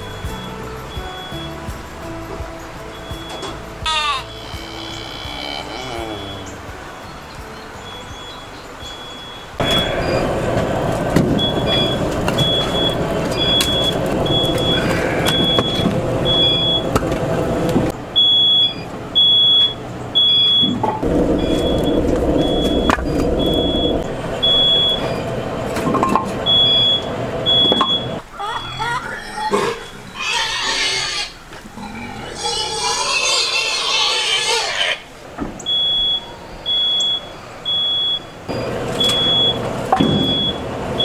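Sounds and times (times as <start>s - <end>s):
vehicle motor rumbling: 6.2s - 28.2s, 35.3s - 41.0s
high electronic beeping: 11.4s - 17.0s, 18.2s - 28.2s.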